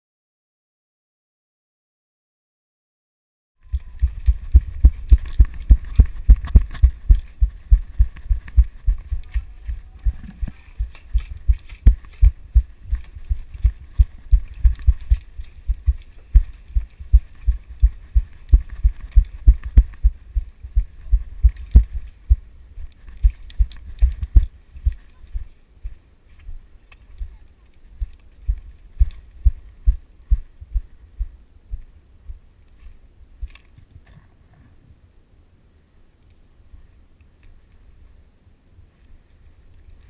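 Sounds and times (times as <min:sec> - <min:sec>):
gear rattling and clicking: 0:03.7 - 0:20.1.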